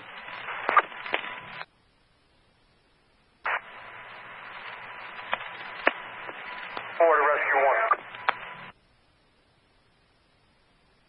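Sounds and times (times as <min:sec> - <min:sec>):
faint steady tone: 0:00.0 - 0:11.0
radio scanner static hiss: 0:00.0 - 0:11.0
radio keying click: 0:05.2 - 0:08.5.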